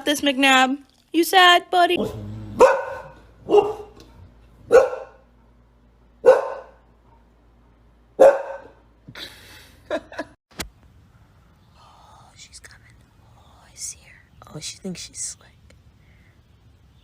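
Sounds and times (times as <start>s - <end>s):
dog barking: 2.0s - 5.5s, 6.2s - 7.2s, 8.2s - 8.8s.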